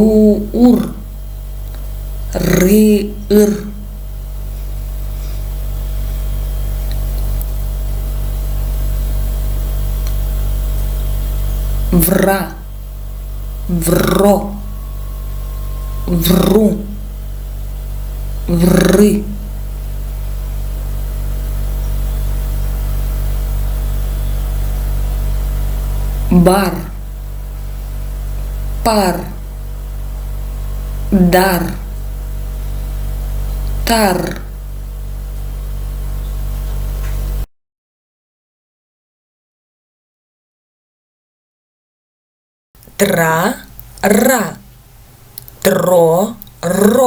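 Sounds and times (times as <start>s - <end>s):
faint regular pulsing: 0.0s - 37.5s
steady low hum: 0.0s - 37.5s, 42.8s - 47.0s.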